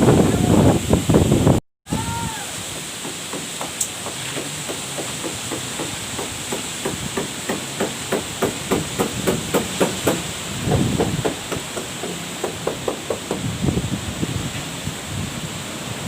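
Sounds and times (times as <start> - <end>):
wind noise: 0.0 - 2.7, 8.6 - 11.6, 13.1 - 16.0
low wind rumble: 0.0 - 2.8, 8.7 - 11.6, 13.3 - 16.0
rapid sharp knocks: 2.8 - 13.5.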